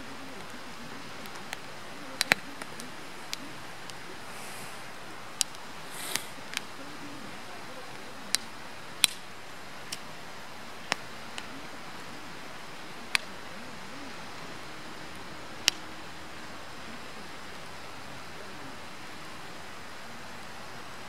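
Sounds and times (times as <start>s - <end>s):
firewood burning hiss: 0.0s - 21.0s
crackling pops of burning wood: 8.3s - 10.1s, 15.6s - 15.9s.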